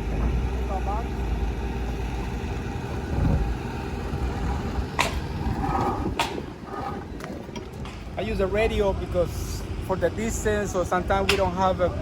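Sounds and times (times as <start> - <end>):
diesel compressor engine running: 0.0 - 6.7.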